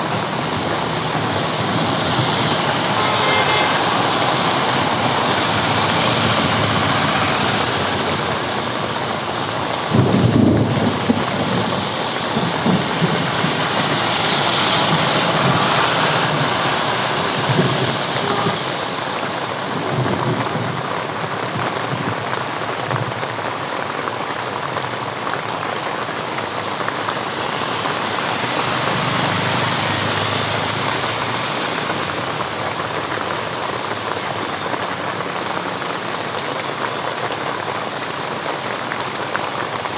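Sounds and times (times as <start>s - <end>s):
heavy rain pouring: 0.0s - 39.9s
thunder clap crackling: 8.8s - 18.6s
low rumble of thunder: 9.8s - 13.9s.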